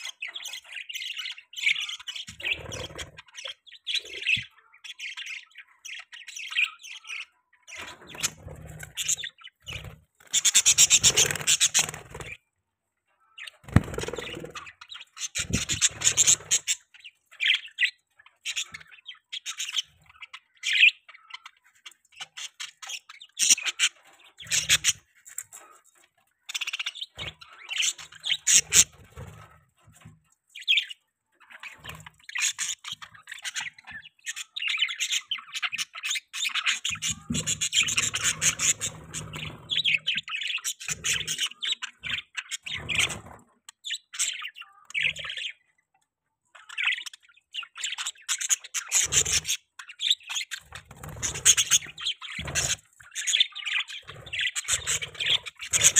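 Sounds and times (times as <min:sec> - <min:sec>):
budgerigars chirping and warbling: 0:00.0 - 0:55.9
budgerigar squawks: 0:10.3 - 0:12.0.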